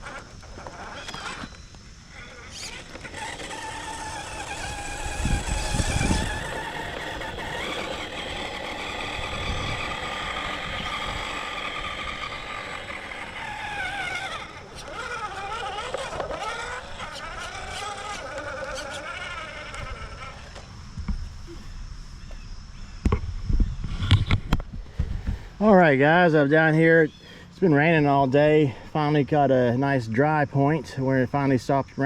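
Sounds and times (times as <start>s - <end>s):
electric motor whining: 0.0s - 21.2s.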